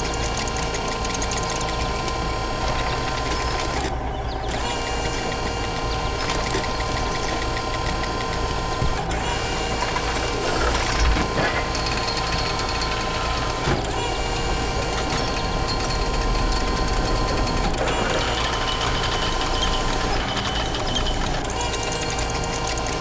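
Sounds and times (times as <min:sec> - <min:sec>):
heavy machinery engine rumble: 0:08.6 - 0:21.7.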